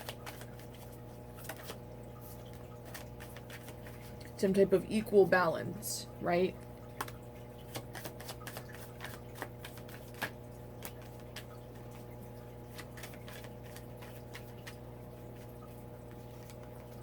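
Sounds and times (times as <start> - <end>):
cards snapping and tapping: 0.0 - 0.8, 1.4 - 1.8, 2.4 - 4.3, 7.0 - 11.9, 12.7 - 14.8.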